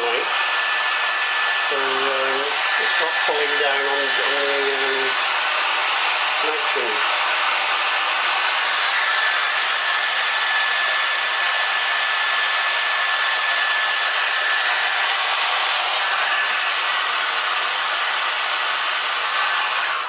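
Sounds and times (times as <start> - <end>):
heat gun blowing: 0.0 - 20.0.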